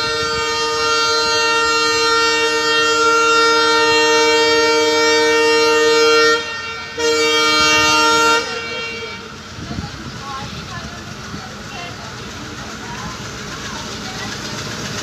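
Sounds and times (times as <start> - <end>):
diesel locomotive horn blasts: 0.0 - 10.8.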